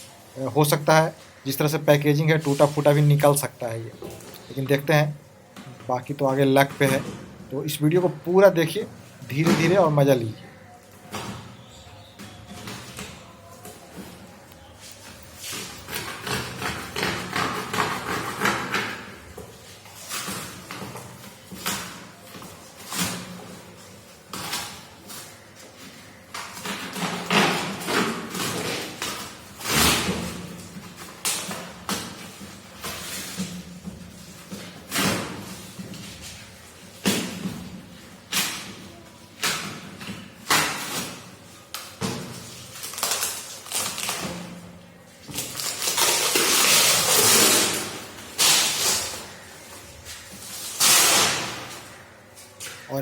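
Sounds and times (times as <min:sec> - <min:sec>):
packaging wrapper rustling and tearing: 0:42.7 - 0:44.4, 0:45.4 - 0:49.4.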